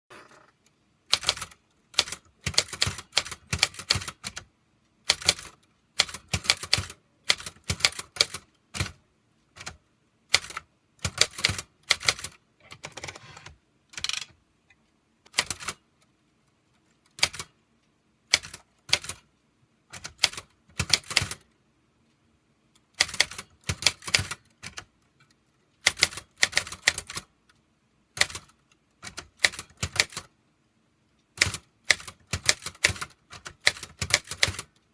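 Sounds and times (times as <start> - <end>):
manual typewriter typing: 1.1 - 9.0, 9.6 - 14.4, 15.3 - 15.8, 17.0 - 17.5, 18.3 - 19.3, 19.9 - 21.5, 22.9 - 24.9, 25.8 - 27.3, 28.2 - 30.3, 31.4 - 34.8.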